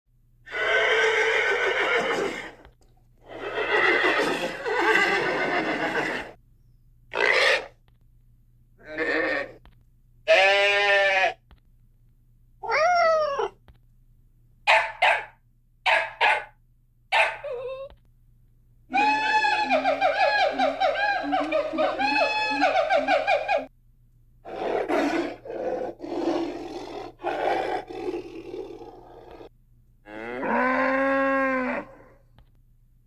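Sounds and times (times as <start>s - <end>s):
horse whinnying: 0.5s - 2.6s, 3.2s - 6.4s, 10.3s - 11.4s, 18.9s - 23.7s
pig call: 7.1s - 7.7s, 10.3s - 11.4s, 18.9s - 23.7s
goat bleating: 10.3s - 11.4s
sheep bleating: 10.3s - 11.4s
cat meowing: 12.6s - 13.6s.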